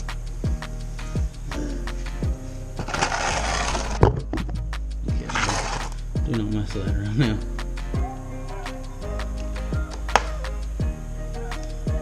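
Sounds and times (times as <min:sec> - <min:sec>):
sliding bass notes: 0:00.0 - 0:12.0
sharp clap: 0:05.7 - 0:06.1, 0:09.2 - 0:10.7.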